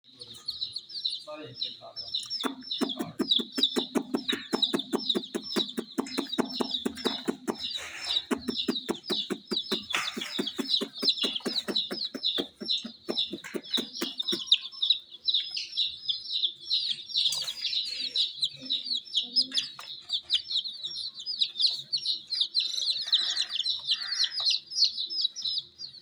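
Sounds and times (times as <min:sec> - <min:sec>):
baby chicks peeping: 0:00.0 - 0:26.0
fast even clicking: 0:02.2 - 0:14.5.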